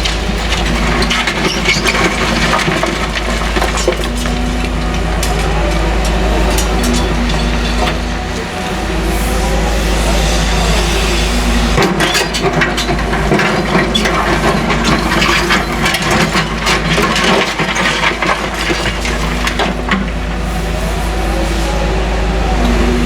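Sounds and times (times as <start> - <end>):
debris clanks and cracks: 0.0 - 8.4, 11.8 - 20.3
excavator diesel engine running: 0.0 - 23.0.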